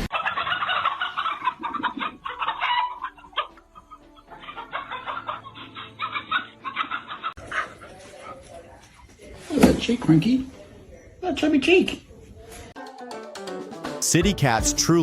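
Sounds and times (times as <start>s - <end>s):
chickens clucking: 0.0s - 8.4s.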